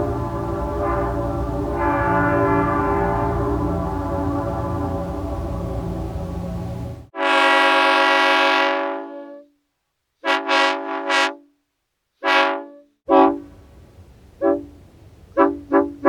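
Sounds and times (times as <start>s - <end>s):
low rumble: 0.0s - 7.1s
short horn toots: 0.0s - 9.6s
train air horn: 0.0s - 9.6s, 10.2s - 11.5s, 12.2s - 13.6s, 14.4s - 14.7s, 15.4s - 16.0s.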